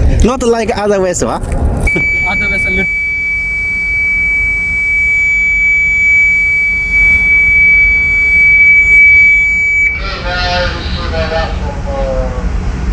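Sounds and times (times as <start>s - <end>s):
low engine rumble: 0.0s - 12.9s
high-pitched alarm buzzer: 1.9s - 10.2s.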